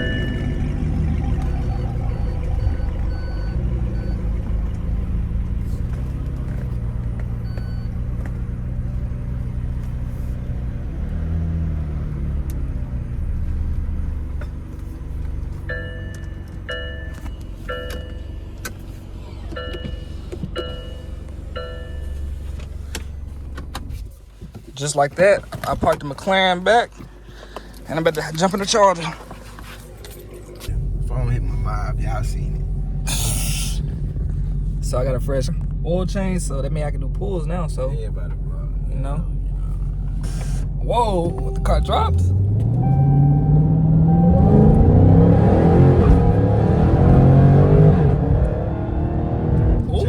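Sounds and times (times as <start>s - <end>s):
parking sensor beeps: 0.0s - 5.6s, 7.1s - 8.3s, 15.6s - 22.4s, 42.7s - 45.0s
sports car engine: 0.0s - 50.0s.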